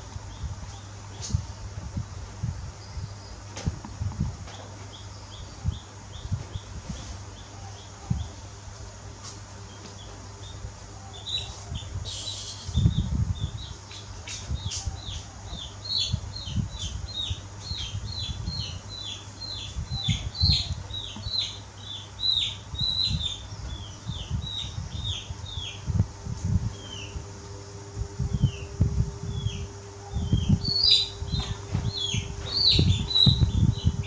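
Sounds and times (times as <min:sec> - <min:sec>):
low thumps and rustling: 0:03.4 - 0:05.0, 0:30.2 - 0:34.0
animal chirping: 0:29.5 - 0:34.0.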